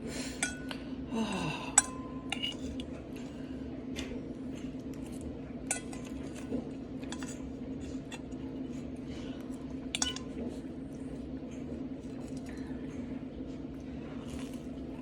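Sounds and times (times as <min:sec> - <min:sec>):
steady low hum: 0:00.0 - 0:15.0
cutlery clinking on a plate: 0:05.7 - 0:07.4, 0:10.0 - 0:10.3.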